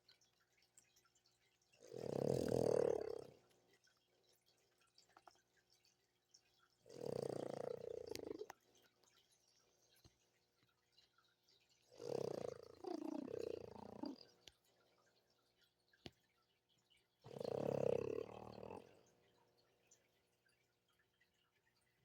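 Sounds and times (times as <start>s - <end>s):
pet snoring: 1.8s - 3.4s, 6.9s - 8.5s, 12.0s - 14.4s, 17.3s - 19.0s.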